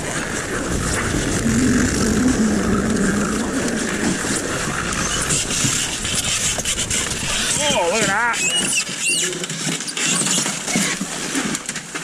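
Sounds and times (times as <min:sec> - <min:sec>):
vehicle engine humming: 0:00.0 - 0:07.6
road and wind noise: 0:00.0 - 0:08.9.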